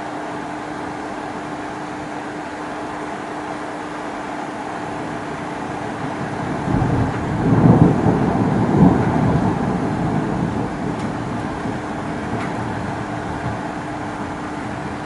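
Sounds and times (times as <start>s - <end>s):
thunder rumbling: 4.8s - 15.0s.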